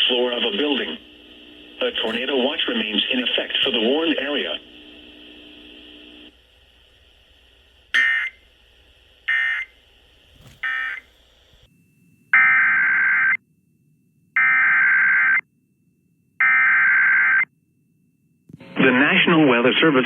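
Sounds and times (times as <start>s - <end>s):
light radio hiss: 0.0s - 11.7s.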